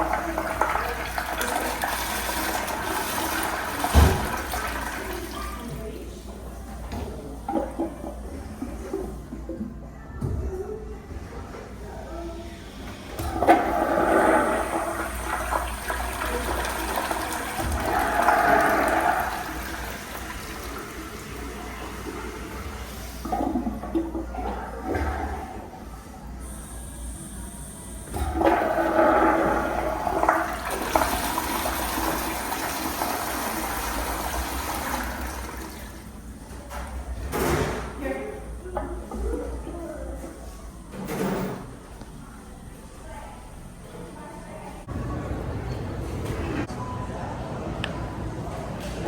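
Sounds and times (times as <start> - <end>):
toilet flush water rushing: 0.0 - 6.1, 12.7 - 36.5.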